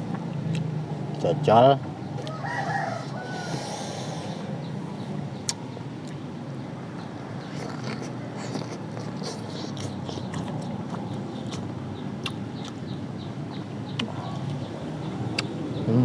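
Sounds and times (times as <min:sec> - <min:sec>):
chewing and mouth smacks: 0:05.4 - 0:06.2, 0:07.4 - 0:13.0.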